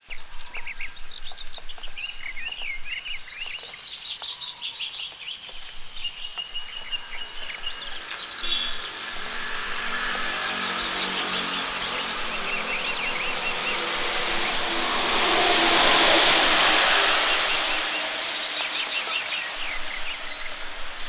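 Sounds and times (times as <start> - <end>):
birds chirping and twittering: 0.0 - 21.0
long steady bird whistle: 0.0 - 21.0
wavy whistled bird notes: 0.0 - 21.0.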